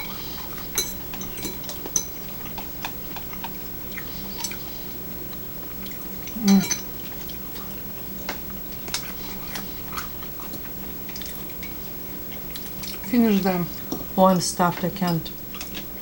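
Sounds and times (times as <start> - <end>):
cutlery clinking on plates: 0.7 - 3.5.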